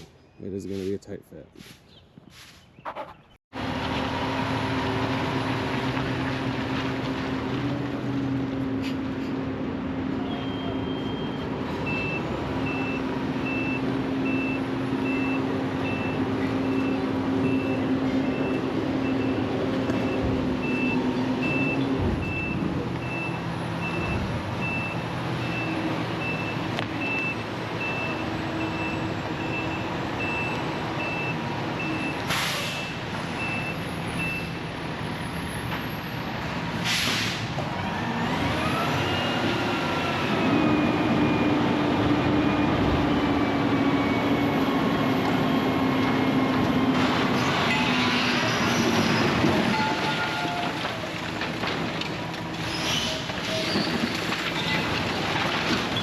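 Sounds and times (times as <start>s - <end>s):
air brake hisses: 32.3s - 32.9s, 36.8s - 37.5s.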